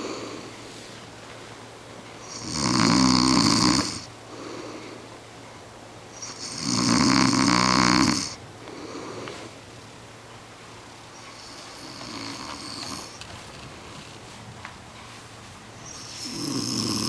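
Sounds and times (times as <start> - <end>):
quiet breaths: 0.0 - 17.0
person snoring: 2.2 - 4.1, 6.2 - 9.3, 11.3 - 13.2, 15.9 - 17.0.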